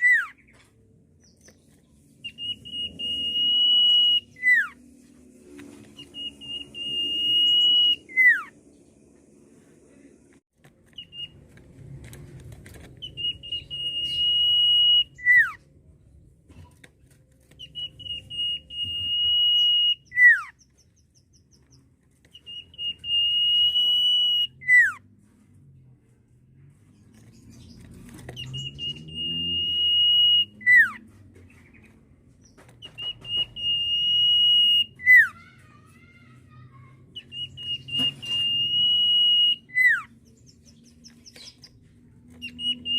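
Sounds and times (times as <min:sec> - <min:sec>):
bird whistling song: 0:00.0 - 0:00.6, 0:01.2 - 0:04.8, 0:05.8 - 0:08.6, 0:10.9 - 0:11.4, 0:13.0 - 0:15.6, 0:17.5 - 0:25.0, 0:27.3 - 0:31.0, 0:32.4 - 0:35.4, 0:37.1 - 0:41.8, 0:42.4 - 0:42.9.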